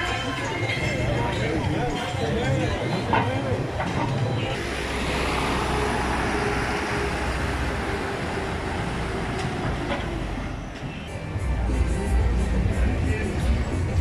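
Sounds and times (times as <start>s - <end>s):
vehicle passing close: 4.6s - 10.8s.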